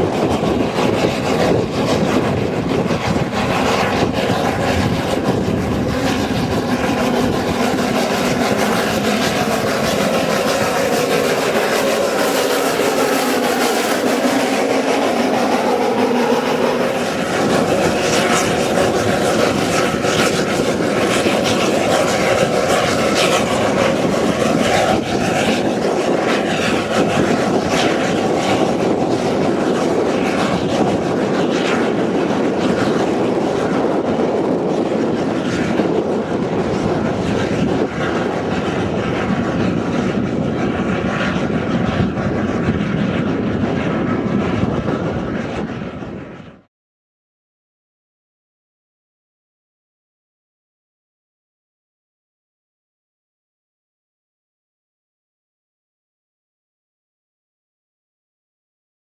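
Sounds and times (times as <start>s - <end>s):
train engine and running noise: 0.0s - 46.7s.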